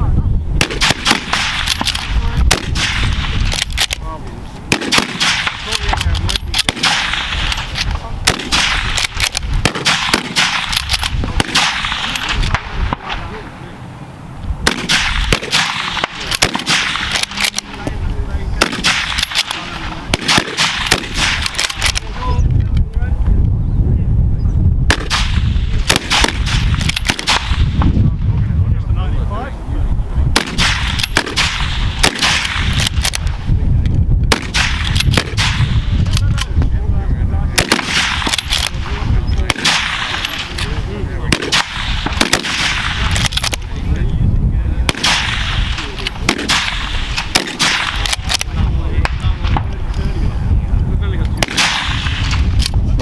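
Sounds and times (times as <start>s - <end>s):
steady low rumble: 0.0s - 53.0s
rifle shots: 0.6s - 13.7s, 14.6s - 18.0s, 18.6s - 22.3s, 24.9s - 27.9s, 30.3s - 33.5s, 34.3s - 36.5s, 37.5s - 43.8s, 44.8s - 49.7s, 51.4s - 52.8s.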